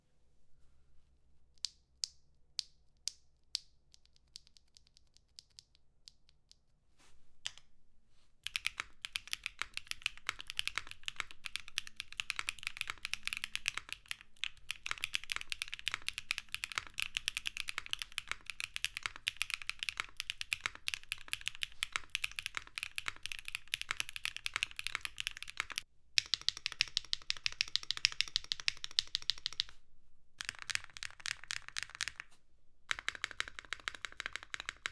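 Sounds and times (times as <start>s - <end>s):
mechanical keyboard typing: 8.4s - 29.7s, 30.4s - 32.3s, 32.9s - 34.9s.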